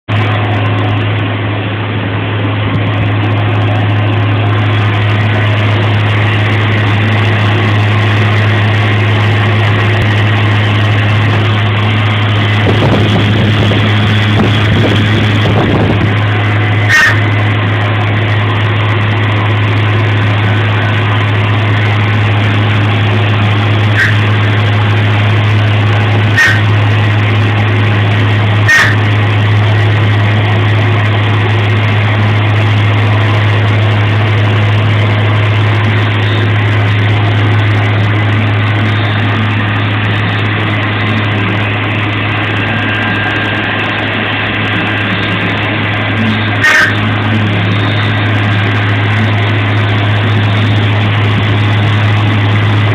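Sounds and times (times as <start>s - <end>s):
milling machine motor hum: 0.1s - 52.9s
machining noise: 2.4s - 52.9s.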